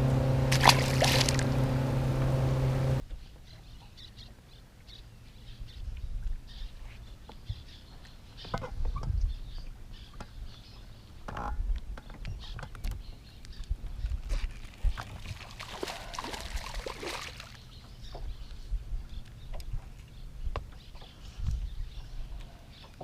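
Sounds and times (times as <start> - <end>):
loud steady hum: 0.0 - 3.0.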